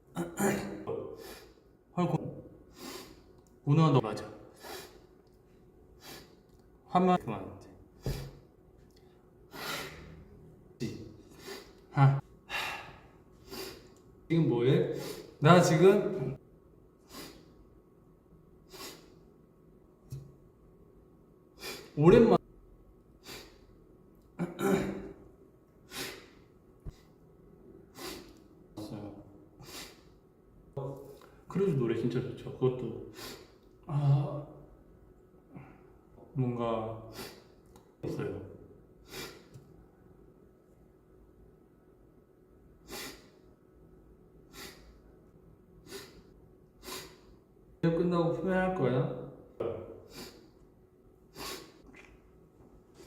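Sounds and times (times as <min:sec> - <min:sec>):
man sniffling: 0:09.5 - 0:10.2, 0:11.3 - 0:11.9, 0:12.5 - 0:13.9, 0:21.6 - 0:22.0, 0:23.2 - 0:23.7, 0:25.9 - 0:27.1, 0:27.9 - 0:28.4, 0:29.6 - 0:30.2, 0:37.1 - 0:37.6, 0:39.0 - 0:39.6, 0:42.8 - 0:43.4, 0:44.5 - 0:45.0, 0:45.8 - 0:47.4, 0:50.1 - 0:50.6, 0:51.3 - 0:51.8.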